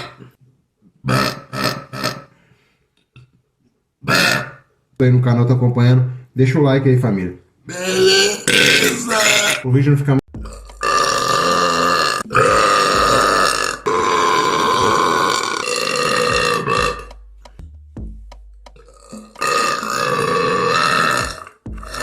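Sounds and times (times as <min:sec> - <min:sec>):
person belching loudly: 0:01.0 - 0:02.3, 0:04.0 - 0:04.6, 0:07.7 - 0:09.7, 0:10.4 - 0:17.2, 0:18.8 - 0:22.0.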